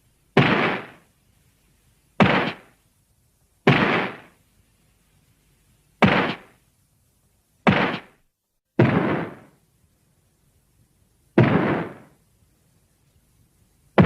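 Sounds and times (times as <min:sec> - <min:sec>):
sharp impact sound effects: 0:02.2 - 0:02.7.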